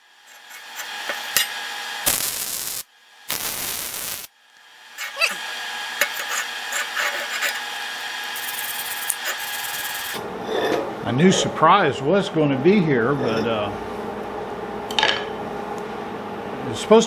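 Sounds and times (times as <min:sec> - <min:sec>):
arc welder crackling hiss: 0:00.0 - 0:10.2.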